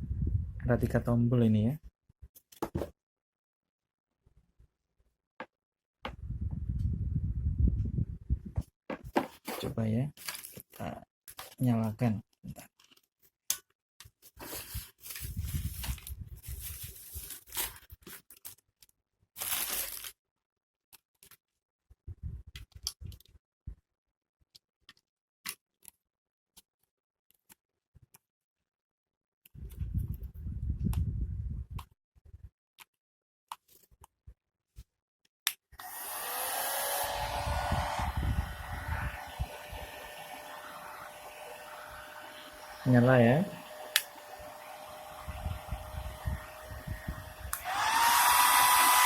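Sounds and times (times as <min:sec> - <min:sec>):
hair dryer blowing: 0:35.8 - 0:49.0.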